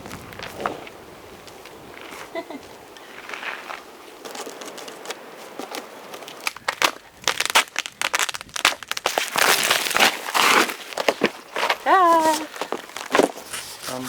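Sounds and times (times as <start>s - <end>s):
packaging crinkling: 4.2s - 14.0s.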